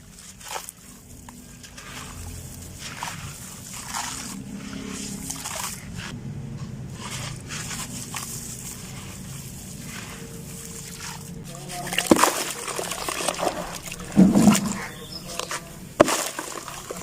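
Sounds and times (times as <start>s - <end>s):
dry cement chunks crumbling: 7.0s - 17.0s.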